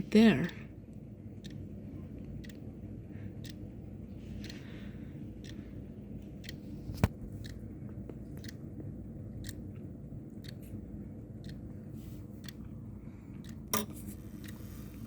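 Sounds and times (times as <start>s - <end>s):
steady low hum: 0.0s - 15.0s
mantel clock ticking: 0.3s - 0.7s, 1.4s - 1.6s, 2.3s - 2.7s, 3.4s - 3.6s, 4.4s - 4.7s, 5.4s - 5.7s, 6.4s - 6.6s, 9.4s - 9.6s, 10.4s - 10.6s, 11.4s - 11.7s, 12.4s - 12.6s, 13.4s - 13.8s, 14.4s - 14.6s.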